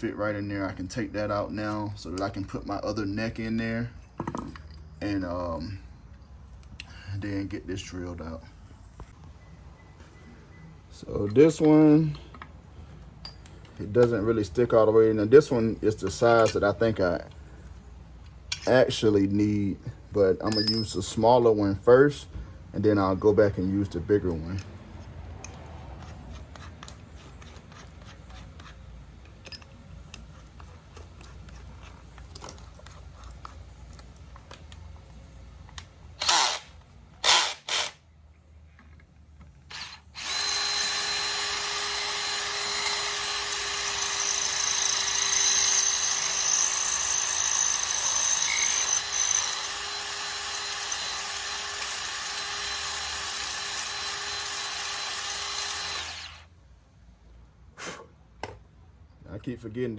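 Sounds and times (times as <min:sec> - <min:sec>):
electric drill boring into metal: 0:36.2 - 0:38.0, 0:39.7 - 0:56.5.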